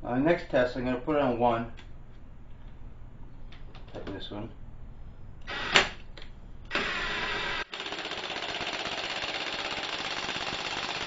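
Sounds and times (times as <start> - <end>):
impact wrench whirring: 5.4 - 6.0, 6.7 - 11.0
impact wrench hammering rattle: 7.6 - 11.0.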